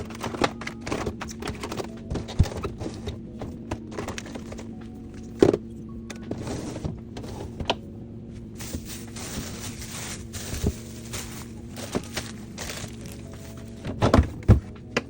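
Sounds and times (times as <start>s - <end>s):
soft background music: 0.0s - 15.0s
containers knocking on fridge shelves: 8.7s - 15.0s.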